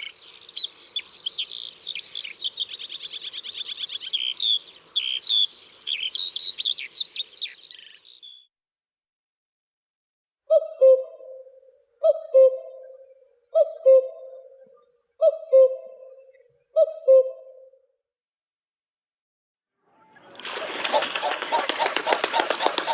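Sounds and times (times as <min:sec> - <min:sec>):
songbird singing: 0:00.0 - 0:08.5, 0:10.5 - 0:17.7
low hooting call: 0:10.5 - 0:17.7.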